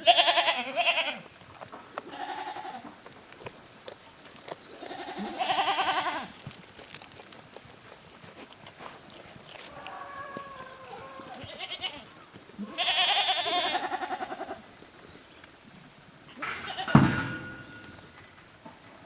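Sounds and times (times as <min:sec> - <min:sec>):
goats bleating: 0:00.0 - 0:01.3, 0:02.0 - 0:03.0, 0:04.8 - 0:06.4, 0:09.6 - 0:14.7
sharp thump: 0:16.6 - 0:18.0.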